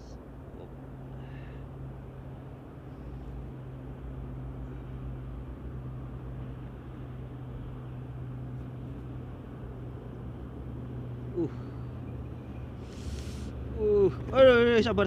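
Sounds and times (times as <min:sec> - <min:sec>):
short hiss: 0:12.8 - 0:13.5.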